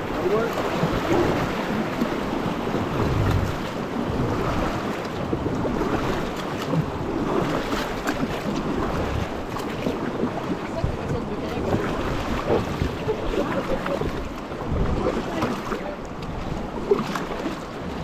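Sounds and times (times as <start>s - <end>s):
paddling: 0.0s - 18.0s
river water rushing and splashing: 0.0s - 18.0s
wind buffeting microphone: 0.0s - 18.0s.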